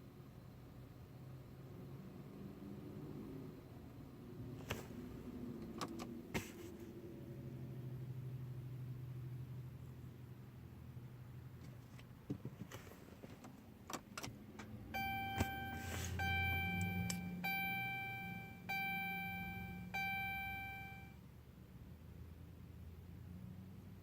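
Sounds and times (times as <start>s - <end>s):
car warning chime: 14.9s - 21.2s
low hum: 14.9s - 21.2s.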